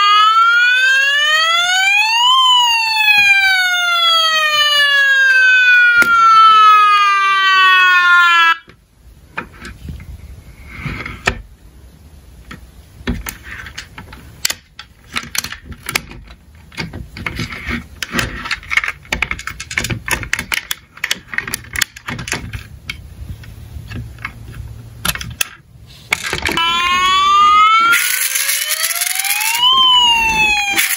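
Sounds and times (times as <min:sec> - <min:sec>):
toy electronic siren wailing: 0:00.0 - 0:08.7, 0:26.4 - 0:30.9
toy cars clicking and clattering: 0:13.1 - 0:23.0, 0:23.9 - 0:26.7, 0:27.8 - 0:30.9.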